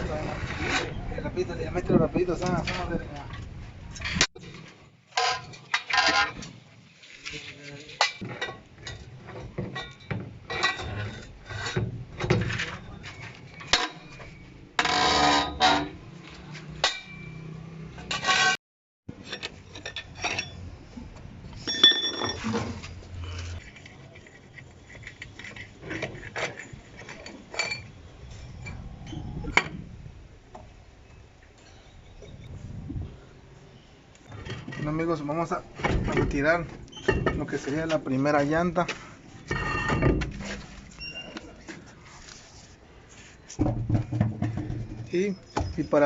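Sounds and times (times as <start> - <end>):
metallic ring: 16.9 - 17.6, 20.1 - 20.7, 21.6 - 22.6
metal tools clinking and clanking: 19.2 - 20.7, 21.6 - 23.8
knocking and scraping on truck wheel: 34.3 - 41.0, 43.1 - 45.9.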